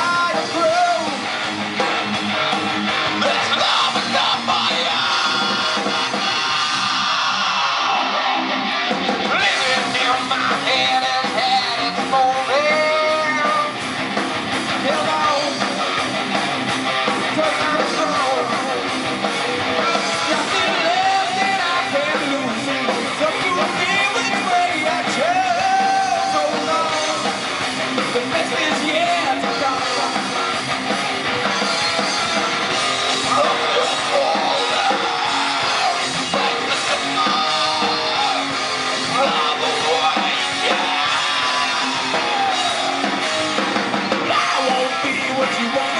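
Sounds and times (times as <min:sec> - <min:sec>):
electric guitars: 0:00.0 - 0:45.9
person singing: 0:03.2 - 0:08.2, 0:09.3 - 0:13.8, 0:14.8 - 0:15.8, 0:17.2 - 0:18.9, 0:19.8 - 0:27.4, 0:33.2 - 0:43.1, 0:44.2 - 0:45.9.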